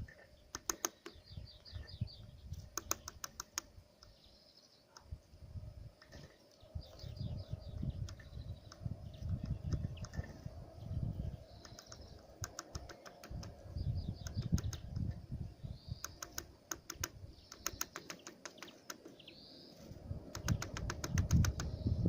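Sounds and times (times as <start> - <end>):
thin high bird chirps: 0.0 - 5.1, 6.1 - 22.0
birds pecking at a feeder: 2.6 - 4.2, 7.8 - 10.6, 11.6 - 15.2, 16.0 - 19.3, 20.2 - 21.9.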